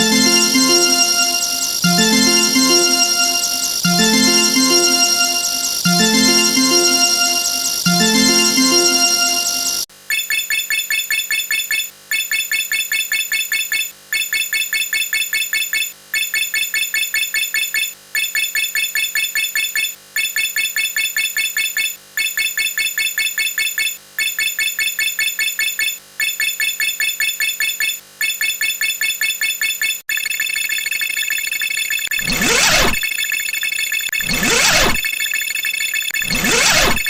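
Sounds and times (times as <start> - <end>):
rapid high electronic beeps: 0.0 - 9.9, 24.2 - 37.0.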